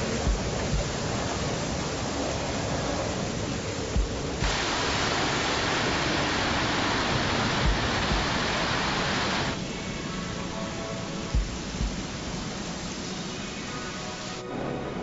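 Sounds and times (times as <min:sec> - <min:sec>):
low thumps: 0:00.0 - 0:01.4, 0:03.9 - 0:09.6
heavy rain rushing: 0:00.0 - 0:15.0.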